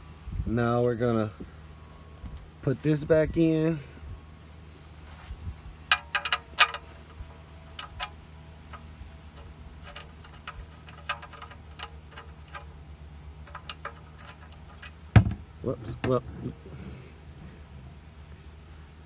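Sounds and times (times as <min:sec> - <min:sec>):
steady low hum: 0:00.0 - 0:19.0
metal parts and tools clinking: 0:05.8 - 0:12.8, 0:13.4 - 0:16.1.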